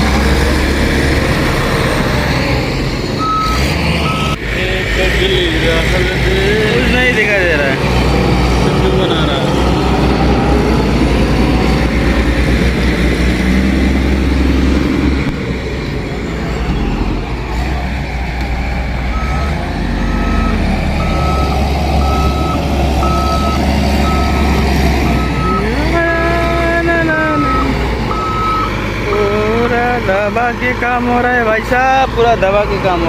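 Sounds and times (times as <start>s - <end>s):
diesel engine running: 0.0s - 33.0s
reversing alarm beeping: 3.2s - 4.4s, 19.1s - 26.0s, 27.4s - 29.3s.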